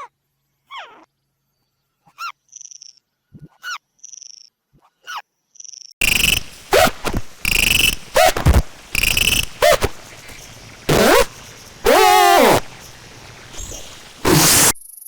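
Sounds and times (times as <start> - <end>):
cartoon squeaky swoops: 3.4 - 3.8, 6.0 - 12.9, 13.5 - 14.8
buzzy frog croak: 6.0 - 14.8.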